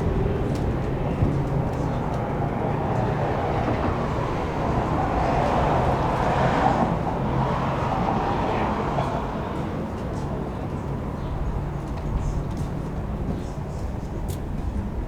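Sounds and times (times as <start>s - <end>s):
road noise: 0.0s - 15.0s.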